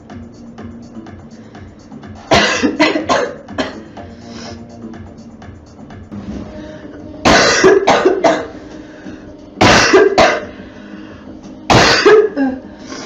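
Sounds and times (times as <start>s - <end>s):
girl coughing: 2.3s - 3.8s, 7.2s - 8.6s, 9.6s - 10.5s, 11.7s - 12.6s.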